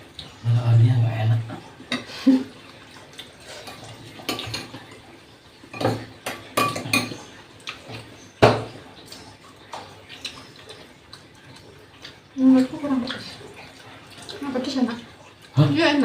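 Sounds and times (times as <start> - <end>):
cutlery clinking on a plate: 5.7 - 7.3.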